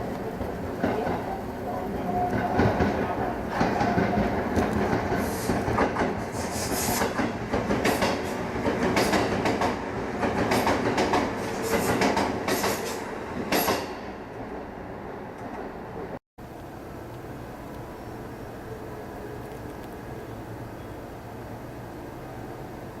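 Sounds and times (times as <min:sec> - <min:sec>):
train rumble: 0:00.0 - 0:23.0
train wheels clacking: 0:02.1 - 0:14.0.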